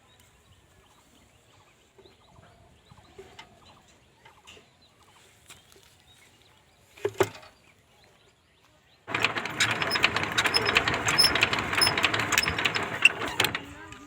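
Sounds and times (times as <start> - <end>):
loud machine clatter: 9.1 - 14.0.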